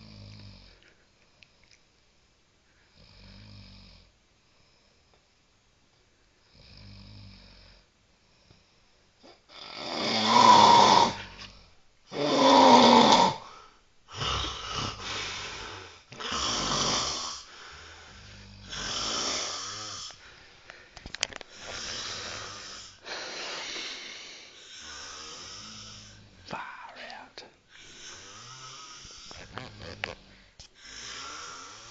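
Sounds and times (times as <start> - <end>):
heavy snoring: 0.0 - 0.8, 2.9 - 4.1, 6.5 - 7.9, 9.2 - 20.4, 21.5 - 26.8, 27.7 - 31.9.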